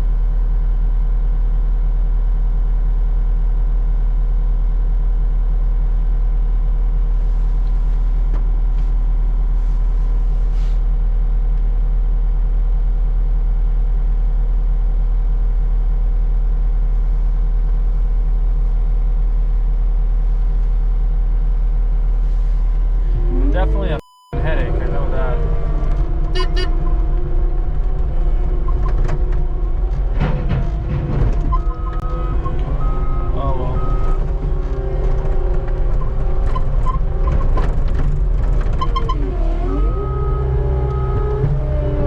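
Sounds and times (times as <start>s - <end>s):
skid steer engine droning: 16.6s - 42.0s.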